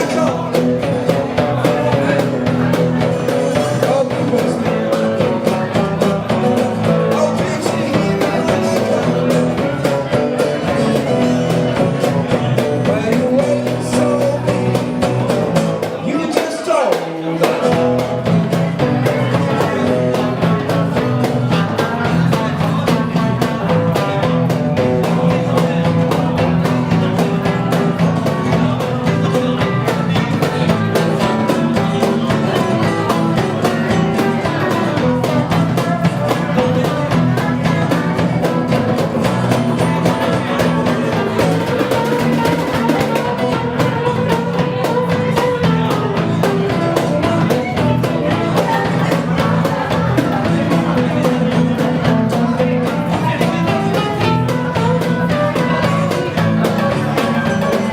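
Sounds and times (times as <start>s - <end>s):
bass guitar: 0.0s - 57.9s
drums: 0.0s - 57.9s
electric guitar: 0.0s - 57.9s
person singing: 0.0s - 57.9s.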